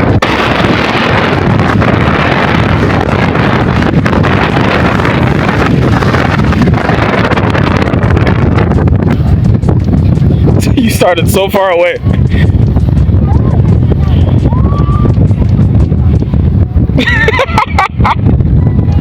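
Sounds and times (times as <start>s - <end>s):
strong wind on microphone: 0.0s - 19.0s.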